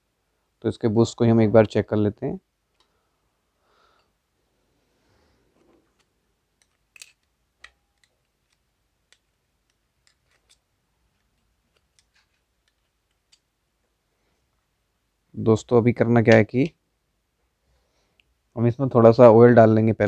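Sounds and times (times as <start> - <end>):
small metal parts clicking: 5.9 - 13.5.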